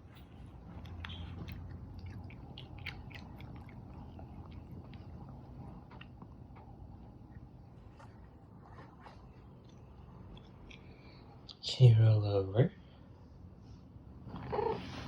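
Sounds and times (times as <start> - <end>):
cat crunching dry treat: 0.5 - 6.9.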